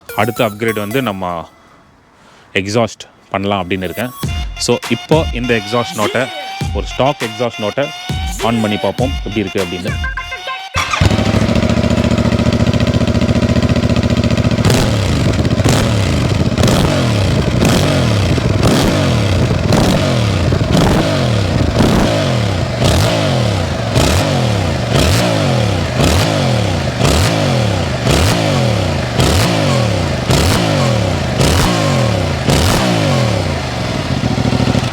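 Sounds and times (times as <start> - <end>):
motorcycle engine idling and revving: 10.8 - 34.9.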